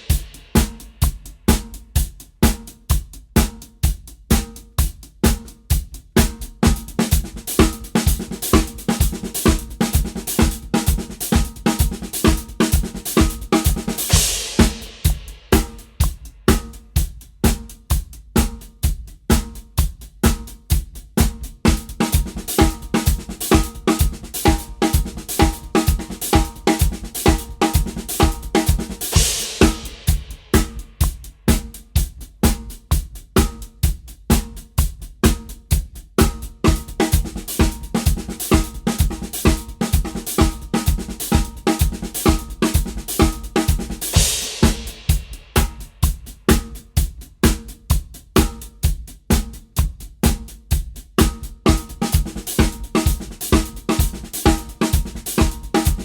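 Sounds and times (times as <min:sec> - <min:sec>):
drum kit playing: 0:00.0 - 0:56.0.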